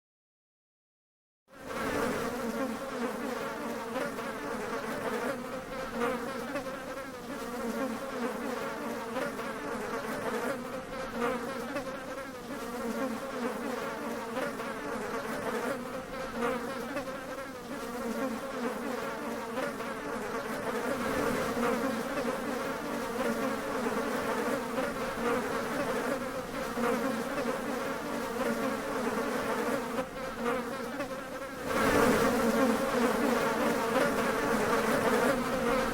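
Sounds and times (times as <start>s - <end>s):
flies buzzing: 1.5s - 35.9s.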